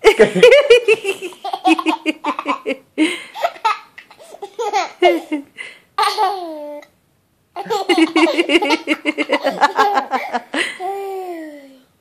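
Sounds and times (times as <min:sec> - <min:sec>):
baby giggling: 0:01.3 - 0:02.8, 0:03.4 - 0:06.9, 0:07.6 - 0:11.6.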